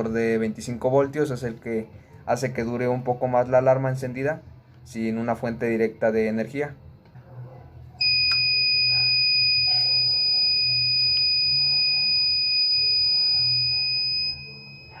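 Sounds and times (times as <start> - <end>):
high-pitched buzzer tone: 8.0 - 15.0.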